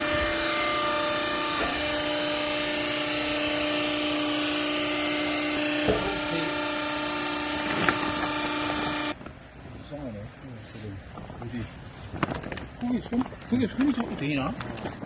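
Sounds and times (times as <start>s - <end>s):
hydraulic motor and pump humming: 0.0s - 9.4s.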